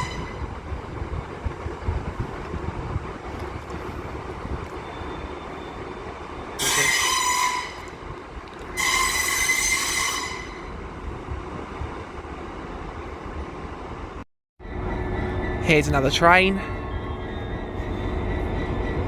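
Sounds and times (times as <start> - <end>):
low rumble of moving train: 0.0 - 19.0
train wheels squealing: 4.7 - 8.0, 8.8 - 10.6, 14.6 - 19.0.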